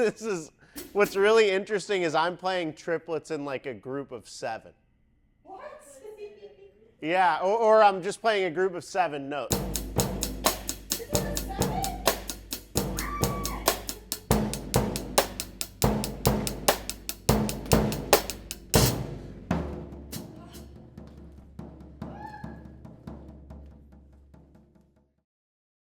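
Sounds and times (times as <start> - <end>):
drum kit playing: 0.7 - 1.4, 9.5 - 25.0.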